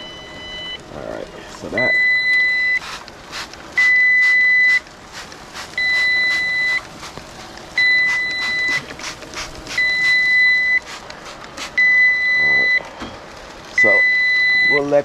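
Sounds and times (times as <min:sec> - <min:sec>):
thermometer beeping: 0:00.0 - 0:03.1, 0:03.7 - 0:04.9, 0:05.8 - 0:06.9, 0:07.7 - 0:10.9, 0:11.7 - 0:15.0.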